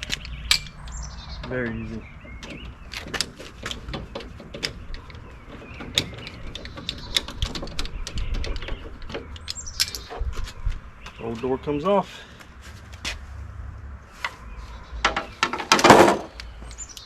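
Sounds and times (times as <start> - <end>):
hand tools clicking on metal hardware: 0.0 - 1.8, 2.4 - 10.2.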